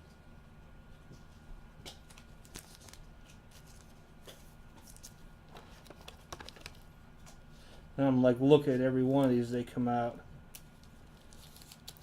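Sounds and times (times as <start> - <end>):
trading cards rustling and clicking: 1.9 - 7.4, 10.6 - 12.0.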